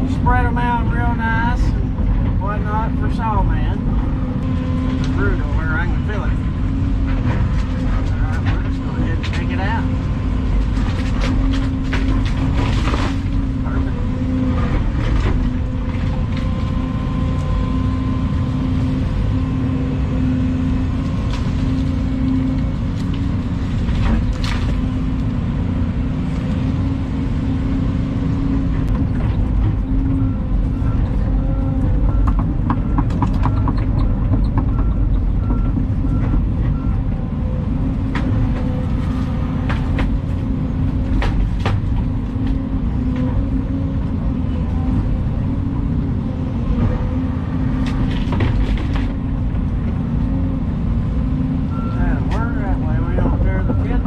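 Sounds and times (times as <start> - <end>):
excavator diesel engine running: 0.0 - 54.0
knocks and cracks of digging: 10.5 - 13.6, 38.0 - 43.3, 47.7 - 50.0.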